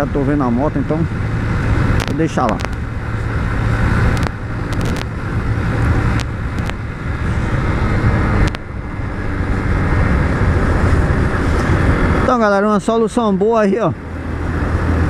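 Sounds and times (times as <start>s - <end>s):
wind noise on microphone: 1.1s - 12.3s
sharp clicks: 2.0s - 2.8s, 4.1s - 5.1s, 6.1s - 6.8s.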